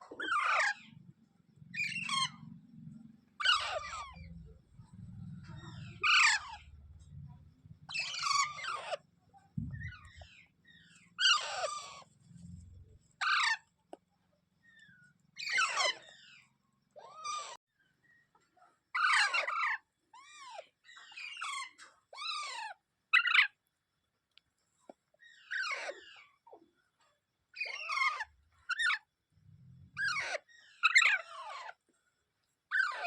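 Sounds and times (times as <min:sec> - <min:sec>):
parrot squawking: 0:00.2 - 0:00.9, 0:01.8 - 0:02.5, 0:03.4 - 0:04.4, 0:05.4 - 0:06.8, 0:07.9 - 0:09.0, 0:09.7 - 0:12.2, 0:13.2 - 0:13.6, 0:15.4 - 0:16.4, 0:19.0 - 0:23.6, 0:27.6 - 0:29.0, 0:30.0 - 0:31.8, 0:32.7 - 0:33.0.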